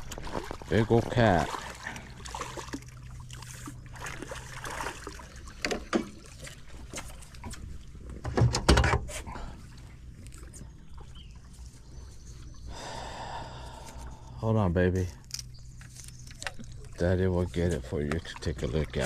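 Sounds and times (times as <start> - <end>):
knocks and rustles: 8.2 - 9.1.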